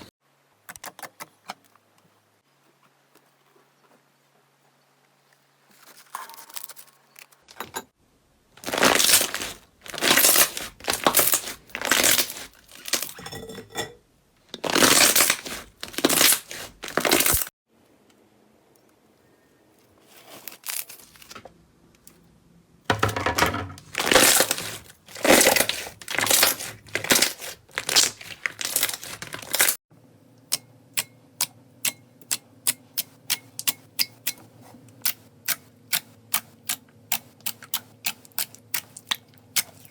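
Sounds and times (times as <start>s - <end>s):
slime squelching and crackling: 8.6s - 13.2s, 14.6s - 17.5s, 23.8s - 29.8s.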